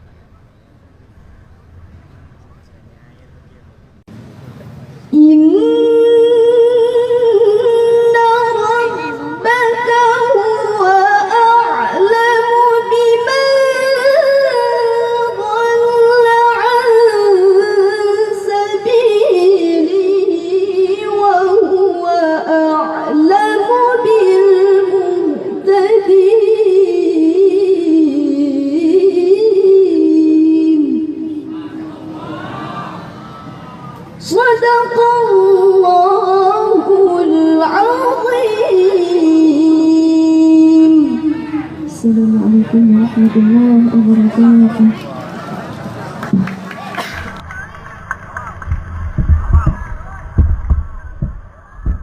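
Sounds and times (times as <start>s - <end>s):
girl reciting melodically: 5.1s - 32.0s, 34.2s - 45.0s.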